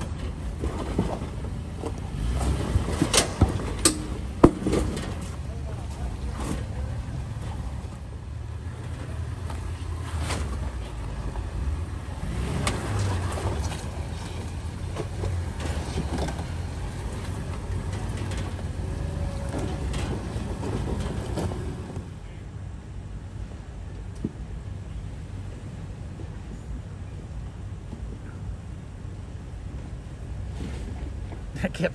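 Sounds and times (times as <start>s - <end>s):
vehicle knocks and clunks: 0.0s - 22.2s
engine running low: 0.0s - 31.9s.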